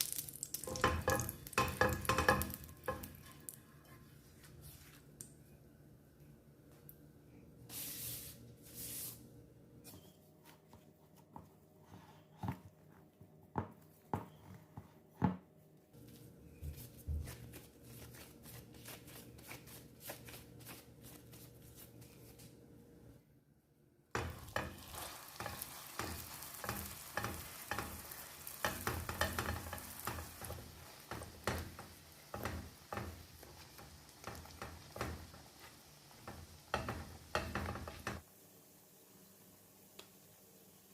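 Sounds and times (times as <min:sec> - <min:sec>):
food sizzling in oil: 0:00.0 - 0:03.5, 0:24.2 - 0:40.9
utensil tapping a pan: 0:00.4 - 0:03.3, 0:24.2 - 0:38.2.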